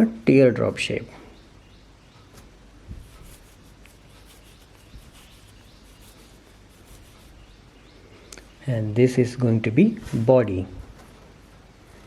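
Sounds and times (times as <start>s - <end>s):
hands rubbing clay: 2.4s - 7.6s.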